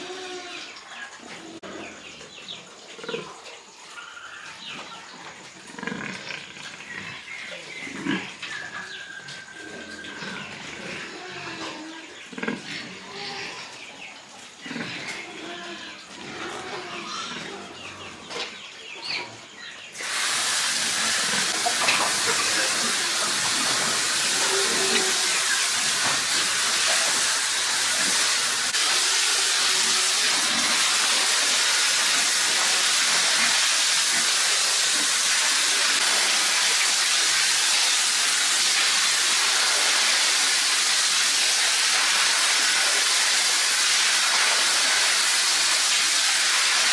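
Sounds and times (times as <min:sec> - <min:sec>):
hose nozzle spraying water: 0:20.0 - 0:46.9.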